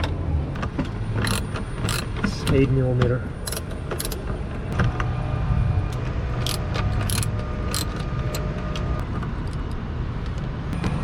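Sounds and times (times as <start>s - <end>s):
wrench metallic clicks: 1.2s - 2.7s, 3.4s - 4.2s, 6.4s - 8.9s.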